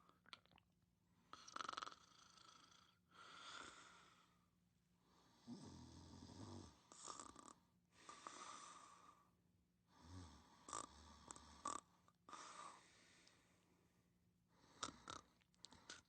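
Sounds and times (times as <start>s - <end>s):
slow sleeping breaths: 3.1s - 9.3s, 9.9s - 13.6s, 14.5s - 16.0s
buzzing snore: 5.4s - 7.6s, 10.0s - 11.9s, 14.6s - 15.3s.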